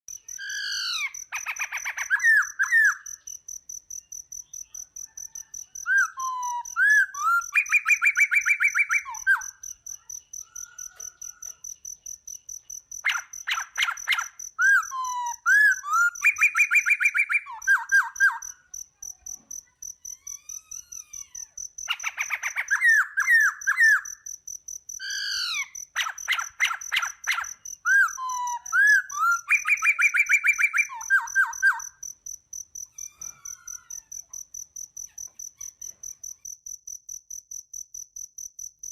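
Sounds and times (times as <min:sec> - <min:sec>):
birds chirping and trilling: 0:00.1 - 0:03.4, 0:04.0 - 0:18.7, 0:20.5 - 0:24.3, 0:25.0 - 0:32.1
high-pitched insect trill: 0:00.1 - 0:38.9.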